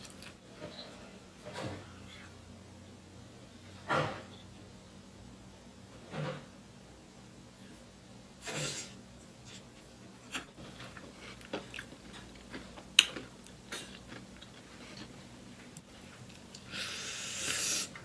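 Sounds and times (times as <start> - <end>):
food crunching: 0.0 - 0.4, 10.3 - 18.0
chewing and mouth sounds: 10.3 - 18.0.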